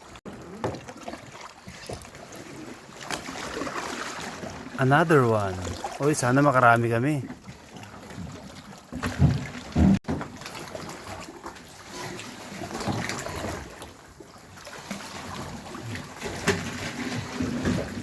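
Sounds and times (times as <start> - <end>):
shallow water splashing: 0.0 - 18.0.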